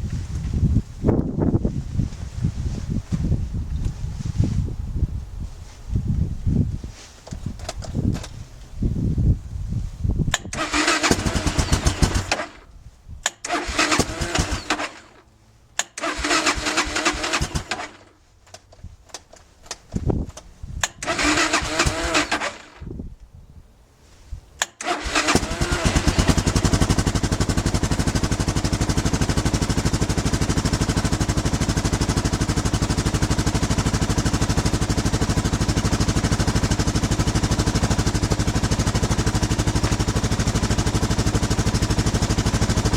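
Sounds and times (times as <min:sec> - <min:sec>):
engine electric starter cranking: 0:10.3 - 0:19.8, 0:20.8 - 0:22.9, 0:24.6 - 0:42.9
motorcycle engine idling: 0:10.5 - 0:12.6, 0:25.1 - 0:42.9.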